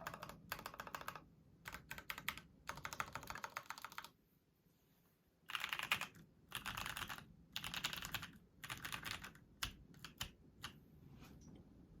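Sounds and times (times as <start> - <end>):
mechanical keyboard typing: 0.0 - 4.2, 5.5 - 10.8.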